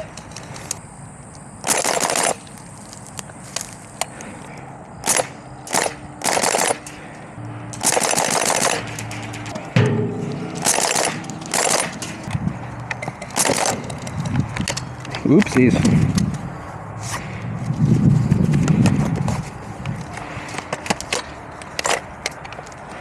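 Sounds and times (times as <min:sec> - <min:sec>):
airsoft guns rapid fire: 0:01.6 - 0:02.4, 0:05.0 - 0:06.9, 0:07.8 - 0:08.9, 0:10.5 - 0:12.1, 0:13.4 - 0:13.9.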